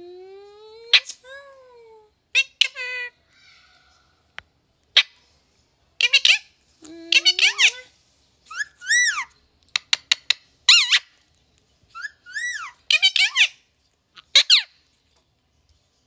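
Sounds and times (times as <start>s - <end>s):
parrot whistled calls: 8.5s - 9.4s, 11.9s - 13.6s.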